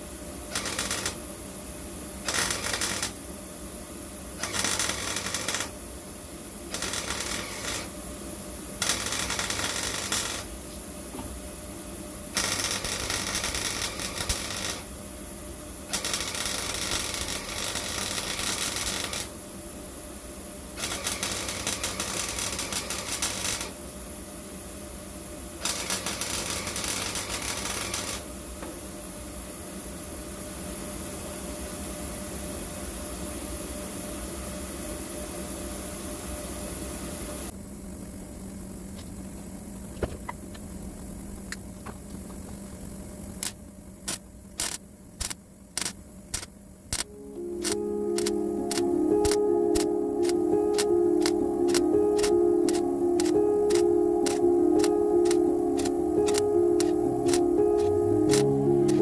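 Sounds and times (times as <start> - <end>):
welding crackling: 4.4 - 5.7, 6.8 - 7.9, 8.8 - 10.5, 12.4 - 14.9, 15.9 - 19.3.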